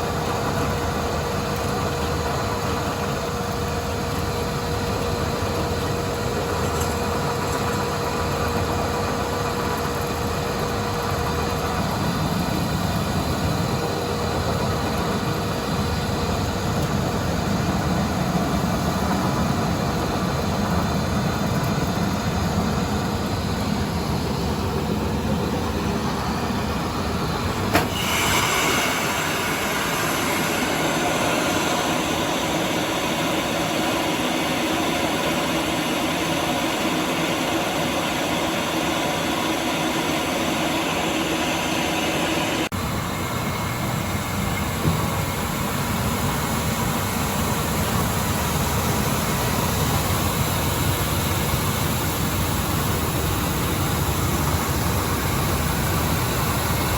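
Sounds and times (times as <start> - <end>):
milling machine running: 0.0 - 56.9.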